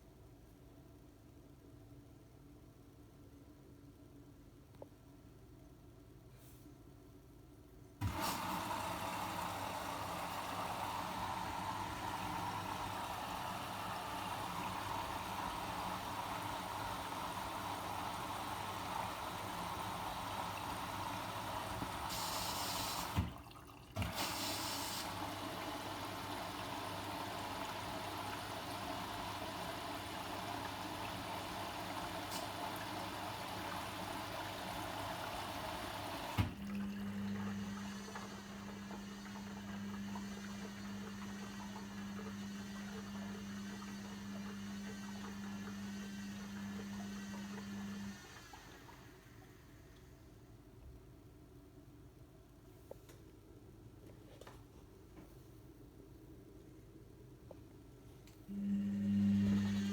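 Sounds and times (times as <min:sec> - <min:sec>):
water rushing into washing machine: 0:08.0 - 0:50.2, 0:58.5 - 0:59.9.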